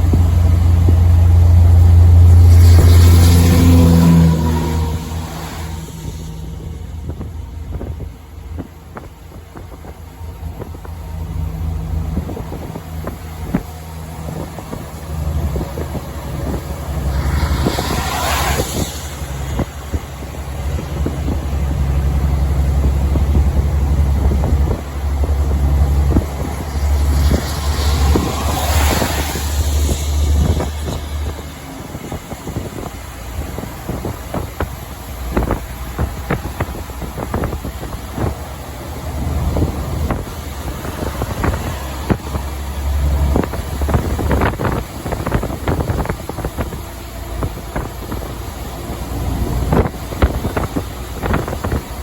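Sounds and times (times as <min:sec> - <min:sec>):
passing vehicle rush: 0:00.0 - 0:52.0
truck diesel engine droning: 0:00.0 - 0:52.0.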